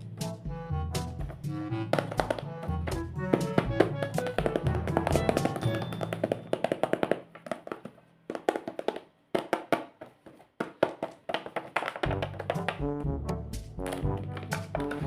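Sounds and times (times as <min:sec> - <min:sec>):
background music with bass line: 0:00.0 - 0:05.6, 0:12.1 - 0:15.0
sharp taps and clicks: 0:10.6 - 0:13.2.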